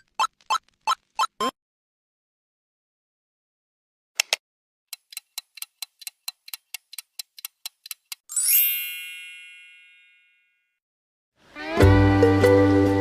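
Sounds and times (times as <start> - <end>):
bright chime: 8.3 - 10.7.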